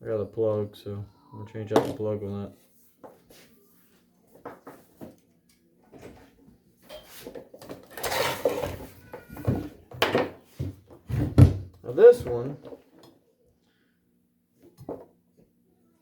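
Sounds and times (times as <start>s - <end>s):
tools clattering on work surface: 6.8s - 10.7s.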